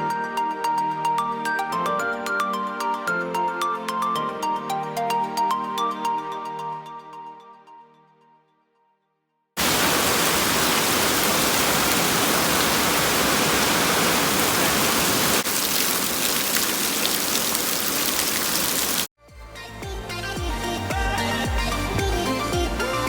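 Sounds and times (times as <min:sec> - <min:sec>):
background music: 0:00.0 - 0:08.5, 0:19.2 - 0:23.0
heavy rain falling: 0:09.6 - 0:19.1.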